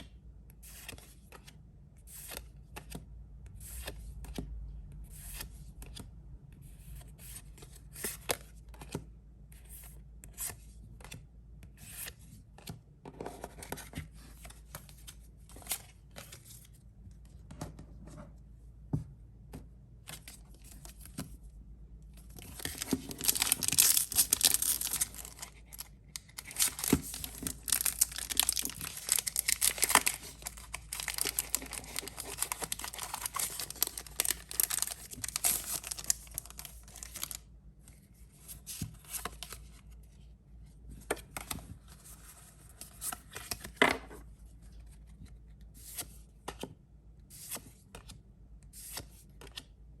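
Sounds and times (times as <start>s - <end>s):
packaging clicks and rustles: 22.3s - 37.4s
wrapping crinkling and tearing: 22.4s - 37.4s.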